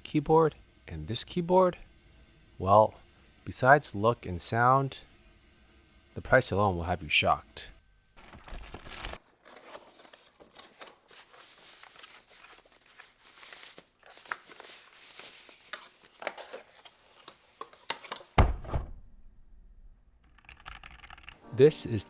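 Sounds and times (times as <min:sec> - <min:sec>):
cardboard and plastic crinkling: 0:08.2 - 0:18.4
heavy thud: 0:18.4 - 0:19.9.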